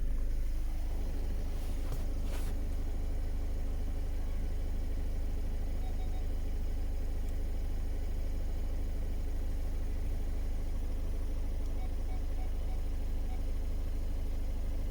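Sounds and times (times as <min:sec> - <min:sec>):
diesel engine idling: 0:00.0 - 0:14.9
faint double beep: 0:05.8 - 0:06.4.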